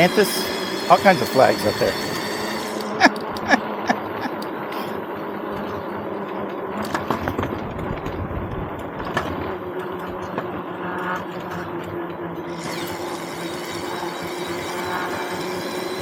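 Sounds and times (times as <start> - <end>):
vehicle engine cruising: 2.7 - 12.6
wind noise: 6.9 - 9.7.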